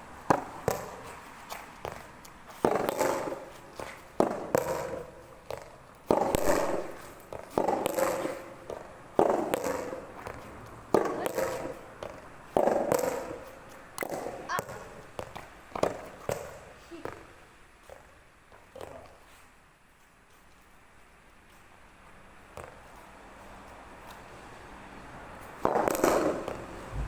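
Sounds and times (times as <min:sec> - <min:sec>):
tennis balls struck by rackets: 0:00.2 - 0:19.2, 0:22.5 - 0:24.3, 0:25.4 - 0:27.0.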